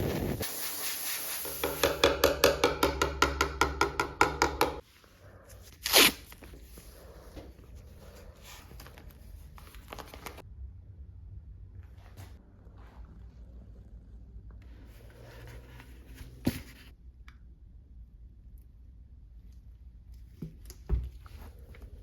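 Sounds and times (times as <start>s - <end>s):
tape crackling: 5.7s - 6.6s
tape ripping off roll: 5.8s - 6.4s.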